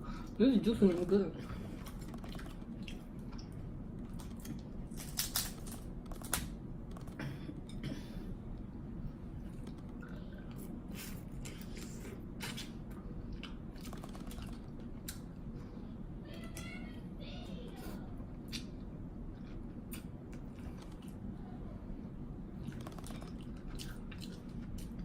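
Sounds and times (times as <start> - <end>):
wet smacking of eating: 1.7 - 7.2
crab shells cracking: 4.0 - 7.2.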